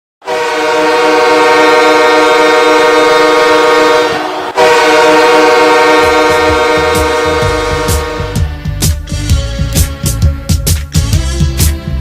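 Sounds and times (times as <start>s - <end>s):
goal horn: 0.2s - 8.5s.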